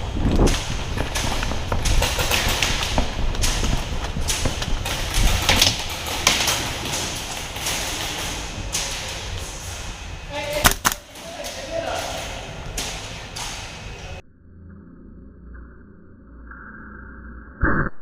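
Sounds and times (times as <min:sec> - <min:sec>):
steady low rumble: 0:00.0 - 0:11.2
thuds and sharp knocks: 0:00.3 - 0:08.2.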